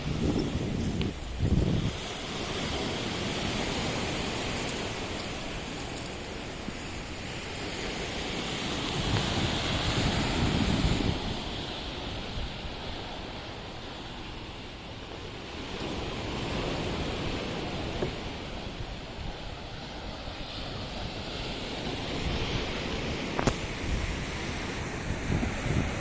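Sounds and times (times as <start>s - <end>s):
surf breaking on shore: 0.0s - 26.0s
wind on microphone: 0.0s - 26.0s.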